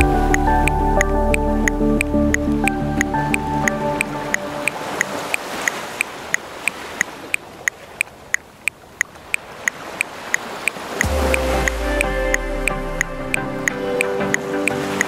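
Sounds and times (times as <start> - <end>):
music with deep bass: 0.0 - 4.3, 11.0 - 15.0
metronome clicking: 0.0 - 15.0
ocean surf: 0.0 - 15.0.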